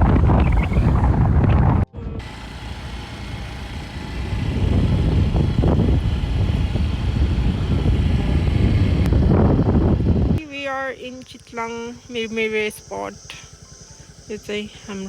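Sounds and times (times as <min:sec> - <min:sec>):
car engine and road noise: 0:00.0 - 0:10.4.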